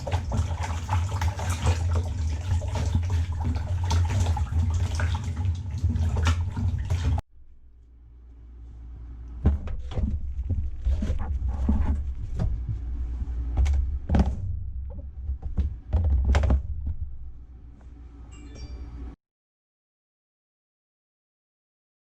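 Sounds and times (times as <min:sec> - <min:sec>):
low rumble: 0:01.8 - 0:18.3
thumps and knocks: 0:09.4 - 0:17.5.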